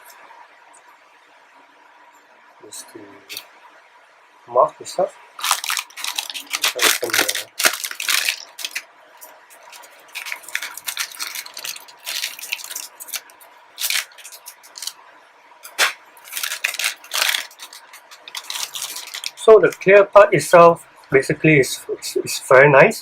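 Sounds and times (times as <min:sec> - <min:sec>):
plastic bag crinkling: 0:05.4 - 0:15.0, 0:15.6 - 0:19.8.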